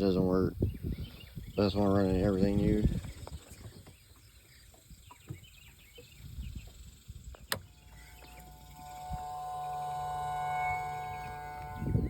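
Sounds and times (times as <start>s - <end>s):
electric motor whining: 7.4s - 12.0s.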